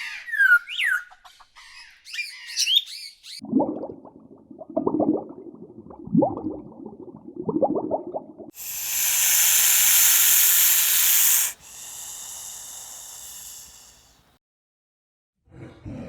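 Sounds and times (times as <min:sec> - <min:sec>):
faint hiss: 0:08.6 - 0:14.3
loud steady hiss: 0:08.6 - 0:14.3.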